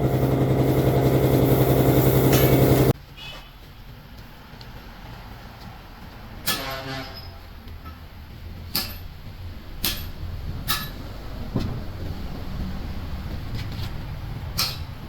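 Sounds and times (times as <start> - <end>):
steady low hum: 0.0 - 2.9.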